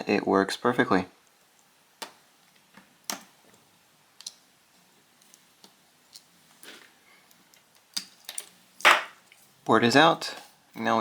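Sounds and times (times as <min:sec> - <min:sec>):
small tools clicking and tapping: 0:04.2 - 0:04.4.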